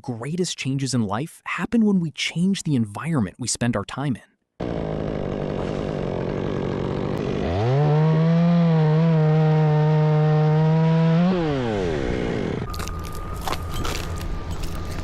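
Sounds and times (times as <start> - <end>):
two-stroke chainsaw revving: 4.6 - 12.7.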